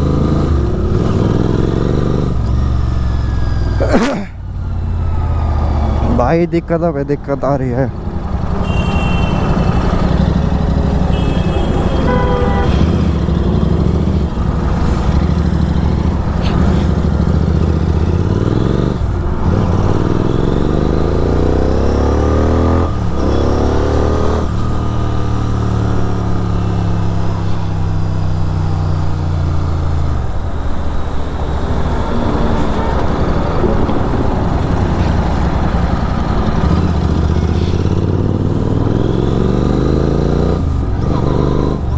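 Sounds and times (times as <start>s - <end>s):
motorcycle engine revving: 0.0s - 41.9s.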